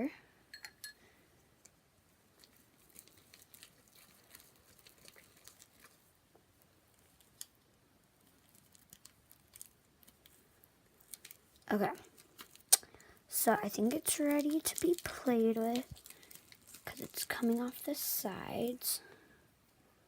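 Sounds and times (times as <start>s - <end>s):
slime clicks and squelches: 8.3s - 10.4s, 13.6s - 18.0s.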